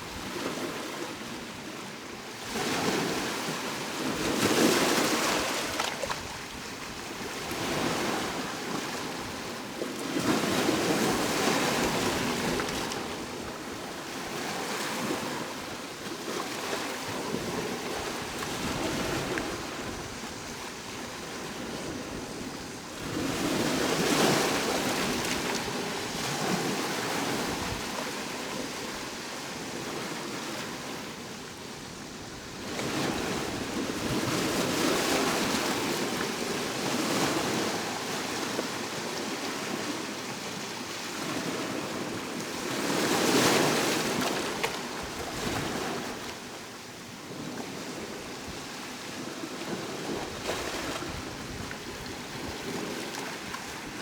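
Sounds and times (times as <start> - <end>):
ocean waves breaking on shore: 0.0 - 54.0.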